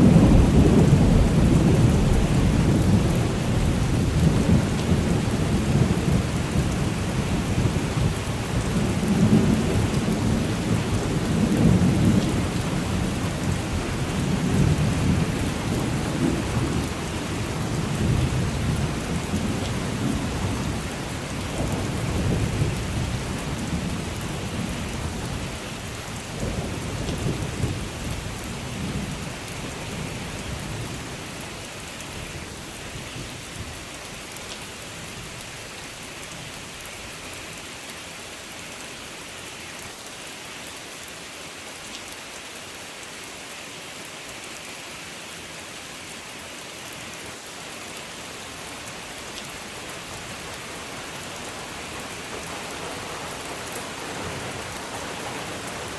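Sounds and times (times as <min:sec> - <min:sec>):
low rumble of thunder: 0:00.0 - 0:31.2
steady rain: 0:00.0 - 0:55.9.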